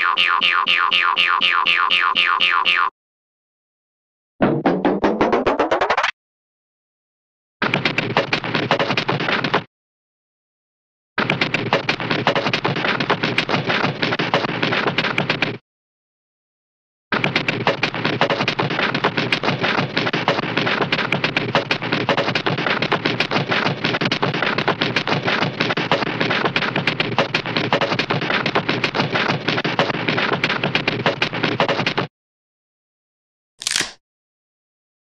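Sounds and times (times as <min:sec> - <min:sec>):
rapid cartoon crackling: 0:04.4 - 0:06.1, 0:07.6 - 0:09.7, 0:11.2 - 0:15.6, 0:17.2 - 0:32.1.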